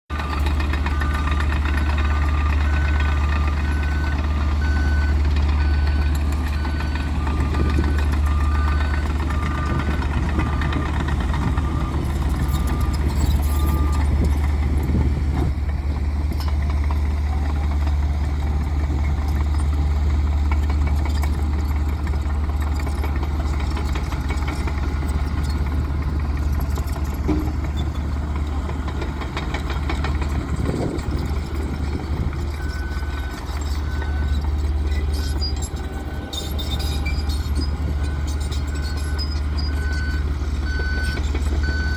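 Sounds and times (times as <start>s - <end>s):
heavy machinery engine rumble: 0.1s - 41.9s
reversing alarm beeping: 0.2s - 15.0s, 29.4s - 41.9s.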